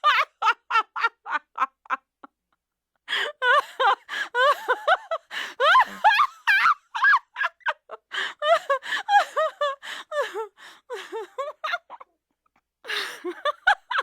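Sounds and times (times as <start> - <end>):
woman laughing: 0.0 - 2.3, 3.1 - 12.1, 12.9 - 14.0.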